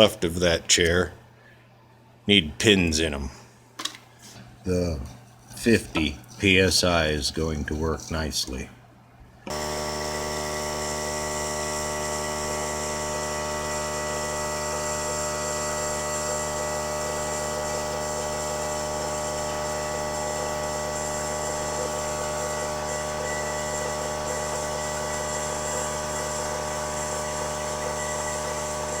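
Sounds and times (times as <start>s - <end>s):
air compressor running: 9.5s - 29.0s.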